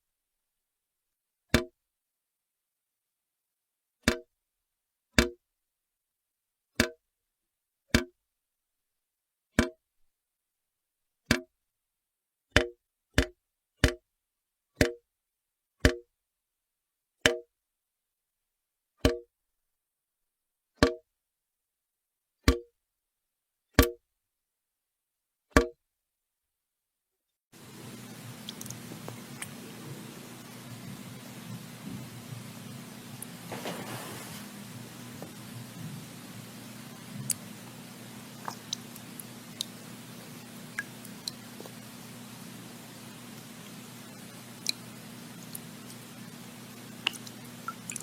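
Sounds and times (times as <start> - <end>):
water drops plinking into water: 4.1 - 4.3, 9.6 - 9.8, 27.8 - 29.6, 36.9 - 37.5, 38.3 - 42.1, 46.7 - 48.0.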